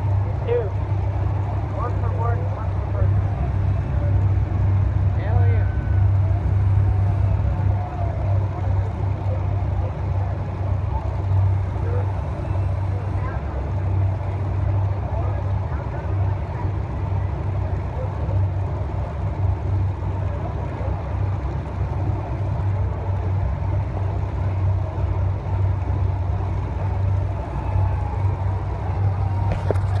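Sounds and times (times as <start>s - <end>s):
race engines revving: 0.0s - 30.0s
low drone: 24.5s - 30.0s.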